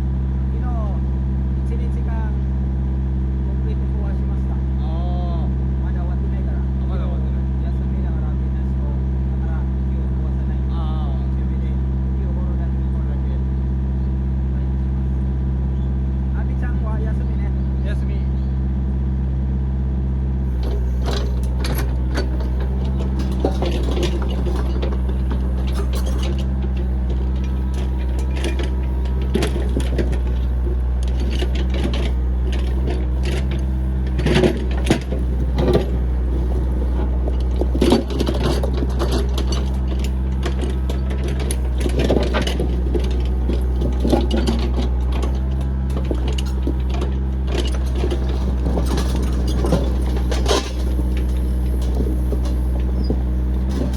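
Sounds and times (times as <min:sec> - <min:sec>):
backhoe engine running: 0:00.0 - 0:53.9
machine knocks clanks and scrapes: 0:20.5 - 0:53.9.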